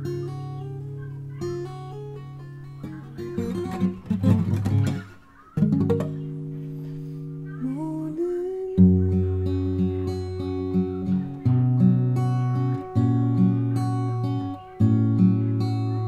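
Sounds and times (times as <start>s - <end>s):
fingerstyle acoustic guitar: 0.0s - 16.0s.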